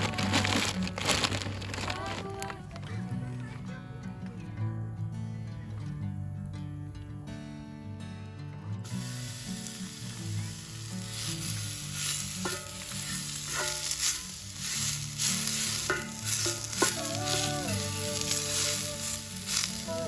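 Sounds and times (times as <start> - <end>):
food sizzling in a pan: 8.8 - 20.0.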